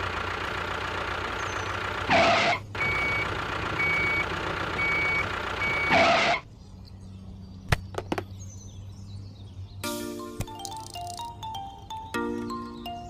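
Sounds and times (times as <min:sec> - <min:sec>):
truck engine and road noise: 0:00.0 - 0:13.0
truck reversing alarm beeping: 0:02.1 - 0:06.4.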